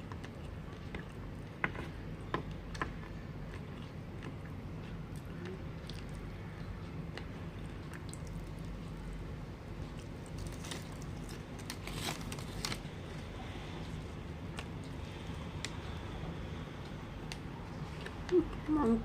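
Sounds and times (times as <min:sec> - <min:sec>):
steady low hum: 0:00.0 - 0:19.0
chewing and biting food: 0:03.4 - 0:09.0
small crunches: 0:10.0 - 0:13.3.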